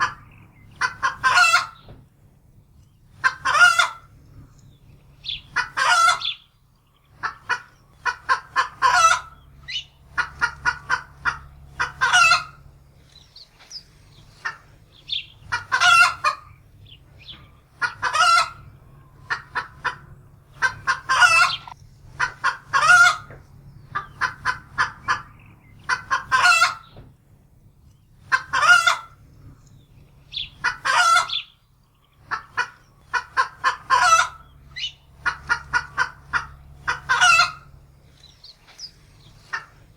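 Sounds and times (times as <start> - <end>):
hen cackling in alarm: 0.0 - 1.9, 3.1 - 4.1, 5.2 - 6.5, 7.1 - 12.7, 13.7 - 27.0, 28.2 - 29.2, 30.3 - 31.6, 32.2 - 37.8.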